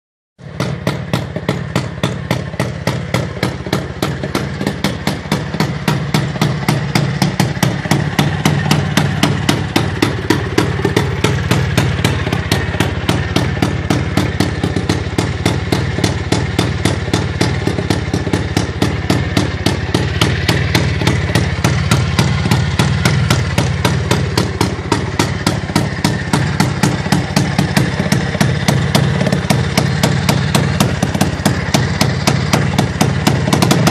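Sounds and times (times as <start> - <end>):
motorcycle engine idling: 0.4 - 33.9
sharp exhaust pops: 0.5 - 33.9.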